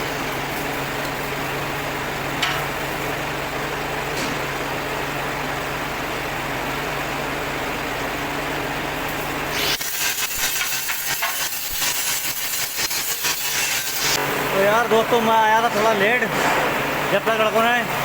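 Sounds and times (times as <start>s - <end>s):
loud hiss with rapid crackling: 9.5s - 14.2s.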